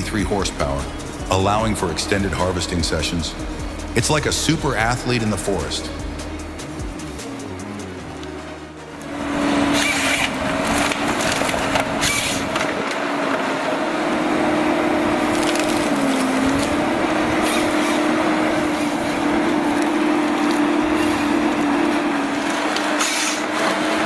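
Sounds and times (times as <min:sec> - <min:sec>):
harvester engine and hydraulics hum: 0:00.0 - 0:24.0
wood cracking and splintering: 0:09.6 - 0:13.5, 0:14.8 - 0:24.0.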